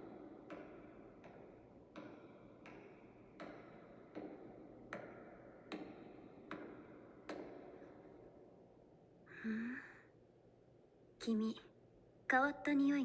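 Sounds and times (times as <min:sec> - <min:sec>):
echoing footsteps: 0:00.0 - 0:09.3.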